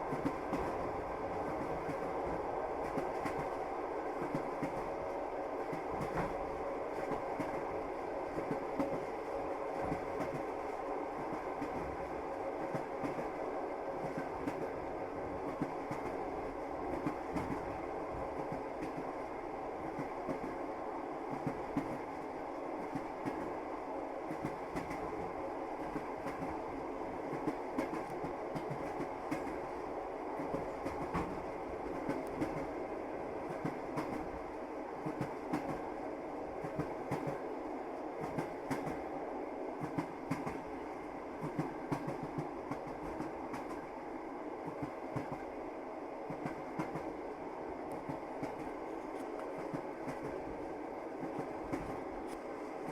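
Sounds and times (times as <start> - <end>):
train carriage rumble: 0.0 - 52.9.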